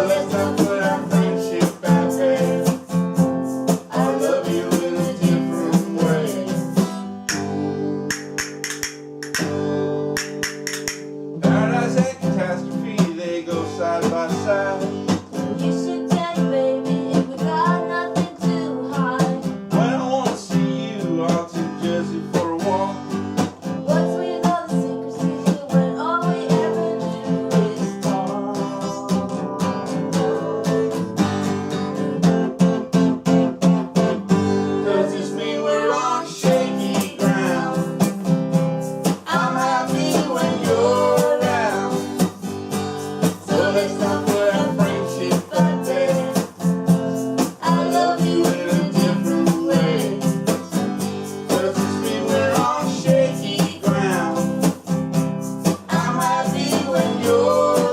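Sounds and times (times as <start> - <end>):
acoustic guitar strumming: 0.0 - 57.9.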